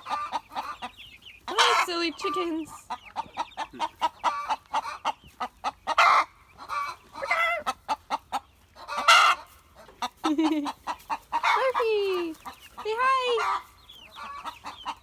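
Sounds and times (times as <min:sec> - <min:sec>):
chickens clucking: 0:00.0 - 0:15.0.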